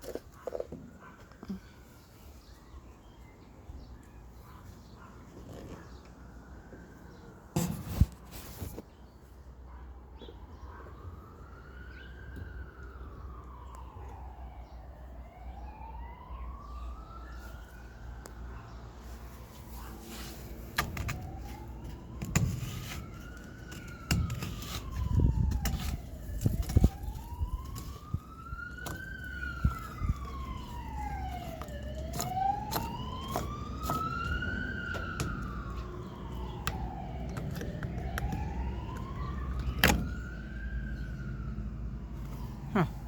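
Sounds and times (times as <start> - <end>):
siren wailing: 11.0 - 18.9, 19.5 - 43.0.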